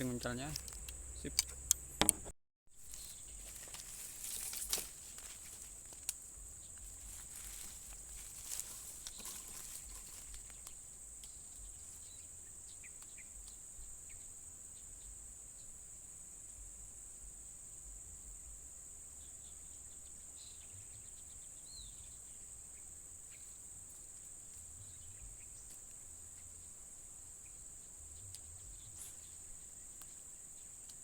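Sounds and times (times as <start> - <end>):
short rustle: 2.8 - 10.8.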